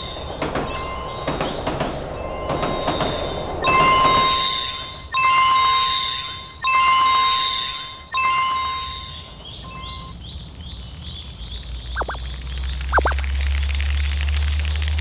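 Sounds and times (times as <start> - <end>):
faint rising chirps: 0.0 - 10.4, 11.9 - 13.3
swooping whistle glides: 2.2 - 10.2, 12.0 - 12.2, 12.9 - 13.2.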